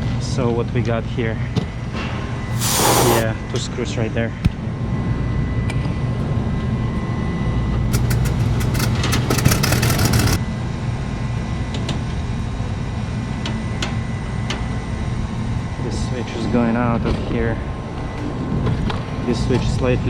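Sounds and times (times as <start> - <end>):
refrigeration equipment humming: 7.9 - 10.4
rapid rattling of screws: 8.0 - 10.4.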